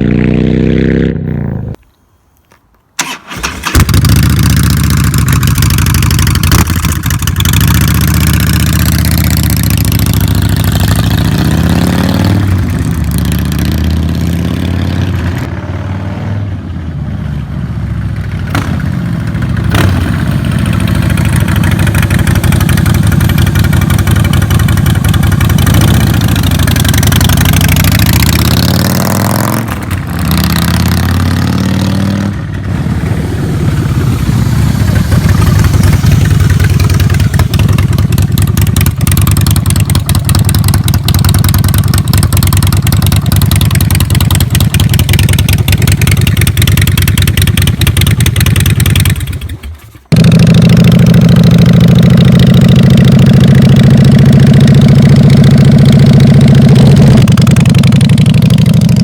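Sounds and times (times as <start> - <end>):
motorcycle exhaust revving: 0.0 - 1.8, 3.7 - 16.5, 17.7 - 59.0
motorcycle idling: 3.0 - 11.6, 17.5 - 31.3, 32.2 - 59.0.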